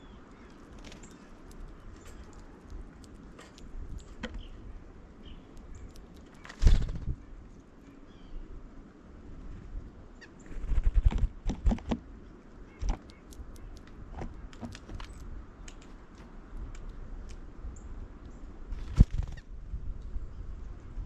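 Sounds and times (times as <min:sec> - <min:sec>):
birds chirping: 0:00.0 - 0:08.6, 0:12.2 - 0:16.6.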